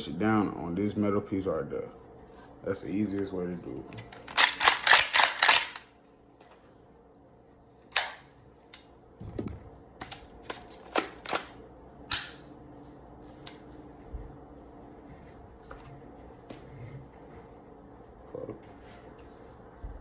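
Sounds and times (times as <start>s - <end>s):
metallic snaps and clicks of pistol: 7.9s - 8.2s, 12.1s - 12.4s.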